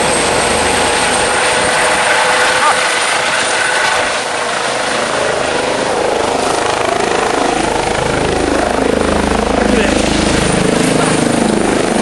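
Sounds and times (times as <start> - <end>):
helicopter rotor chop: 0.0 - 12.0.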